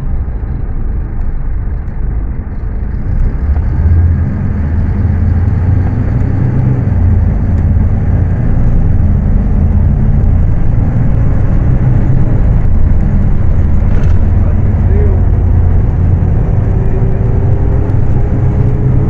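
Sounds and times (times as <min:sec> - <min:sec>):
bus diesel engine drone: 0:00.0 - 0:19.0.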